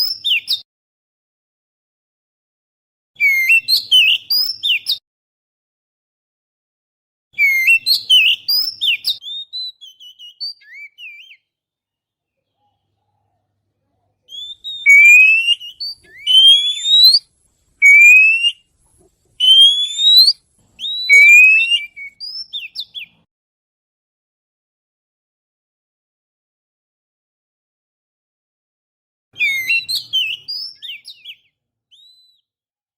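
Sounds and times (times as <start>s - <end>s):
bird singing whistled notes: 0.0s - 0.6s, 3.2s - 5.0s, 7.4s - 11.6s, 14.2s - 18.7s, 19.3s - 23.3s, 29.4s - 32.6s.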